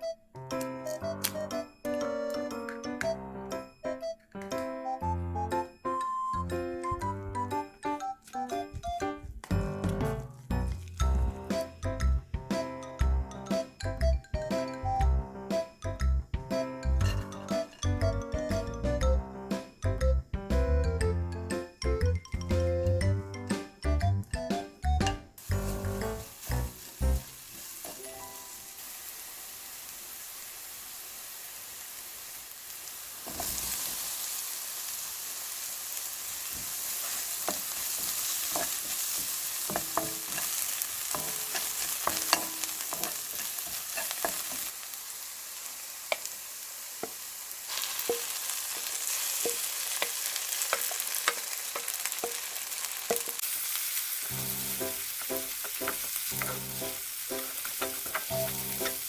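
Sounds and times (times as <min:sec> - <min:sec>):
food sizzling in frying pan: 0:16.8 - 0:18.7, 0:25.4 - 0:59.0
spatula scraping a pan: 0:36.6 - 0:44.7.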